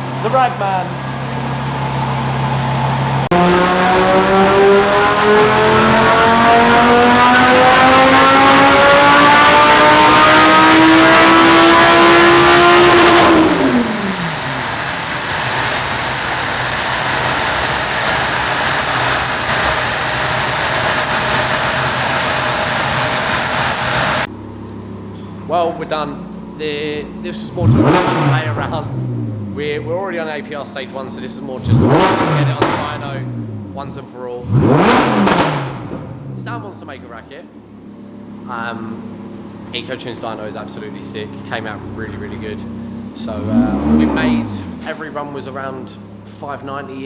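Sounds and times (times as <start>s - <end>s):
loud steady rushing noise: 0.0s - 24.3s
sports car engine revving: 0.0s - 47.0s.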